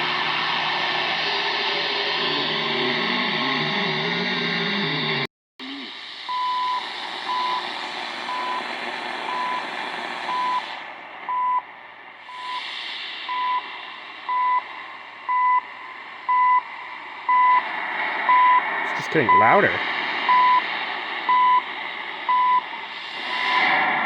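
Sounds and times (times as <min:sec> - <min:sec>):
time signal beeps: 0:18.3 - 0:20.6
radio static hiss: 0:18.9 - 0:19.8.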